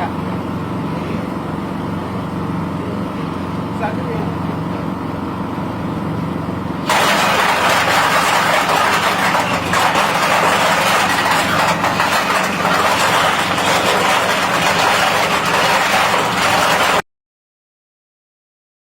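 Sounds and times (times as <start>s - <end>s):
machine engine running: 0.4s - 17.0s
loud grinding noise: 6.8s - 17.0s.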